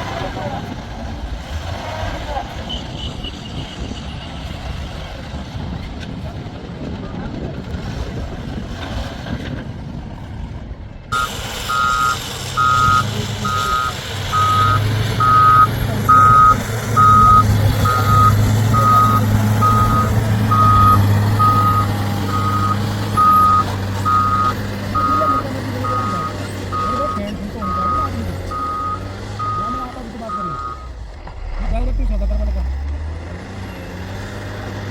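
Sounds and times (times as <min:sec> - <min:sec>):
diesel engine running: 0:00.0 - 0:34.9
reversing alarm beeping: 0:11.1 - 0:31.0.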